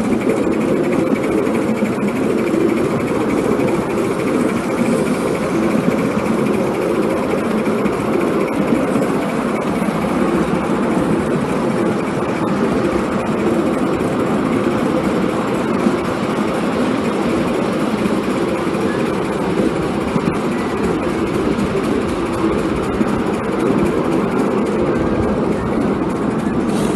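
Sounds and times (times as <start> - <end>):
steam locomotive running: 0.0 - 26.9.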